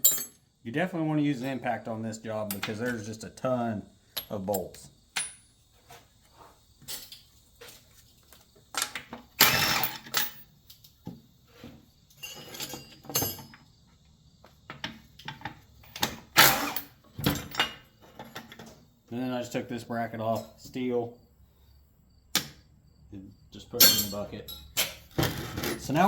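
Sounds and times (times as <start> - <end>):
metal parts clinking: 0.0 - 0.4, 4.1 - 5.4, 8.8 - 10.4, 12.2 - 13.6, 23.8 - 25.0.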